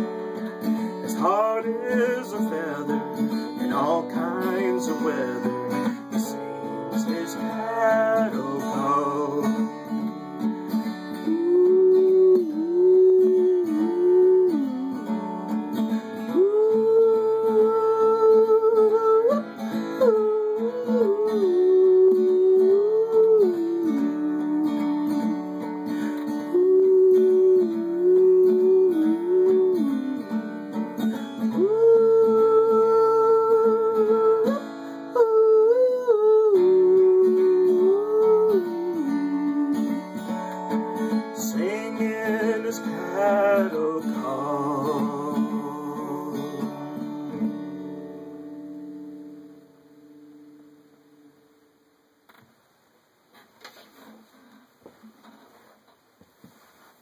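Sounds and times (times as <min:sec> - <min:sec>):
strummed acoustic guitar: 0:00.0 - 0:51.6
person yodeling: 0:01.0 - 0:03.0, 0:07.0 - 0:09.6, 0:11.2 - 0:15.4, 0:16.3 - 0:25.2, 0:26.3 - 0:30.2, 0:31.4 - 0:40.0, 0:41.4 - 0:47.0.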